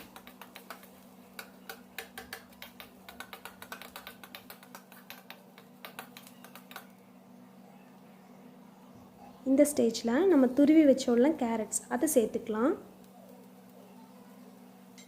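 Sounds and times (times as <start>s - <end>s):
spatula clicking and scraping pan: 0.0s - 6.9s
faint steady hum: 0.0s - 15.0s.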